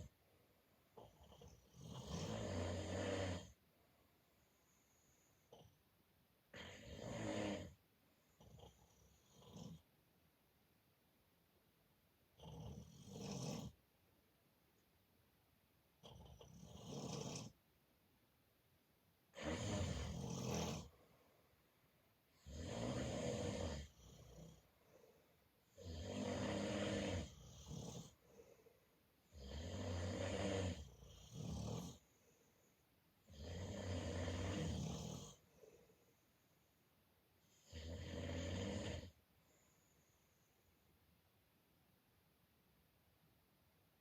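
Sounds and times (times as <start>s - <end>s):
person snoring: 1.0s - 3.6s, 6.5s - 7.8s, 8.4s - 9.8s, 12.4s - 13.8s, 16.0s - 17.6s, 19.3s - 21.0s, 22.4s - 25.0s, 25.7s - 28.5s, 29.3s - 32.1s, 33.2s - 35.9s, 37.5s - 39.2s
soft breath: 24.6s - 25.6s, 28.1s - 29.2s, 32.0s - 33.1s, 35.3s - 36.9s.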